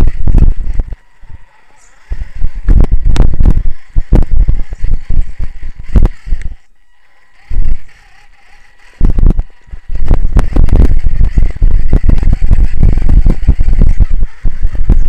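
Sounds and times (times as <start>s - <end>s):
wind buffeting microphone: 0.0s - 1.0s, 2.1s - 6.6s, 9.0s - 15.0s.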